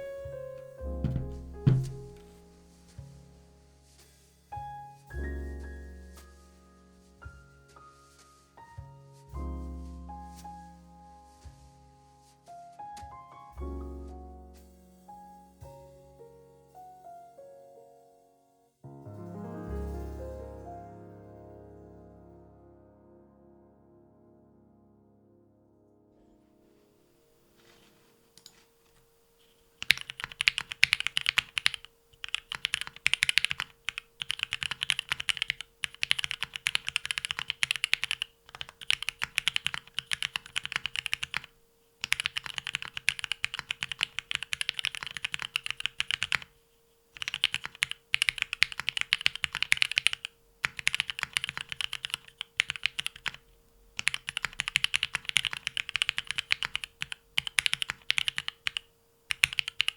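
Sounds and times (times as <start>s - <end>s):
fast mechanical keyboard typing: 29.8s - 46.5s, 47.1s - 53.4s, 54.0s - 59.9s.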